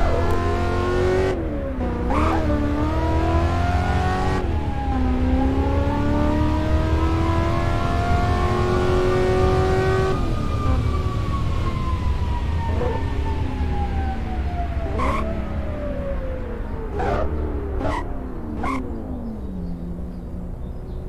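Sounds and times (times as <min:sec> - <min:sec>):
car engine whine accelerating: 0:00.0 - 0:21.0.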